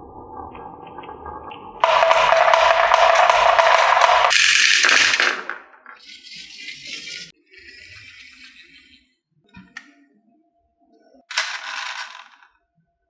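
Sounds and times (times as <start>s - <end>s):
marbles rattling down wooden track: 4.3s - 7.3s, 11.3s - 12.4s.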